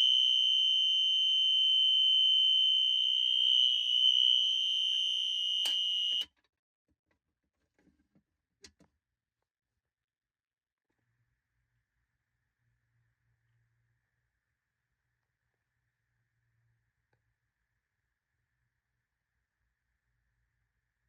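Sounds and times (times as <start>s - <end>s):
fire alarm tone: 0.0s - 6.3s
click: 4.9s - 6.5s, 8.6s - 8.9s.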